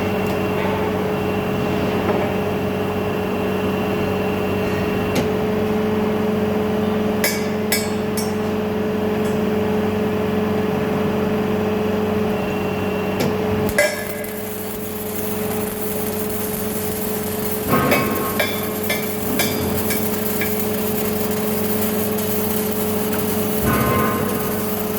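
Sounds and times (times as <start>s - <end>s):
industrial machine humming: 13.3s - 24.9s
sharp metallic clinks: 13.7s - 24.9s.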